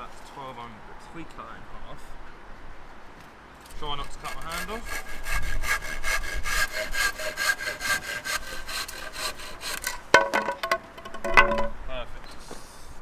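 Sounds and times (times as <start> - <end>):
saw cutting wooden board: 3.7 - 11.6.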